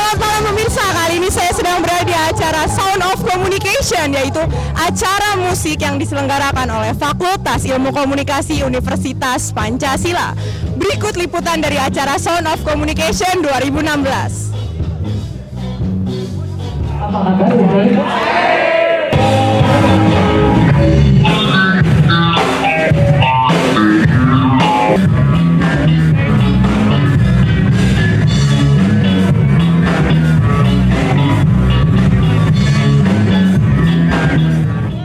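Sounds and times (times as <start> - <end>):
rock music with guitar and drums: 13.2 - 17.3, 19.1 - 35.0.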